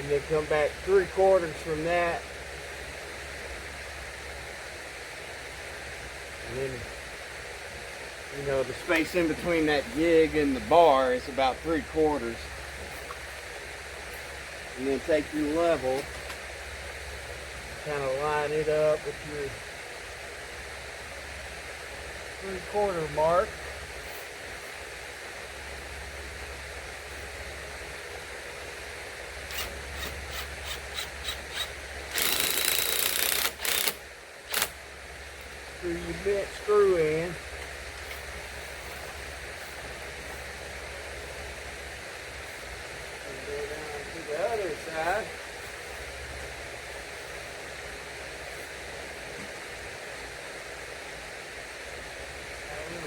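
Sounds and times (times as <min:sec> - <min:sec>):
steady outdoor background hiss: 0:00.0 - 0:53.0
cordless drill driving screw: 0:29.5 - 0:34.8.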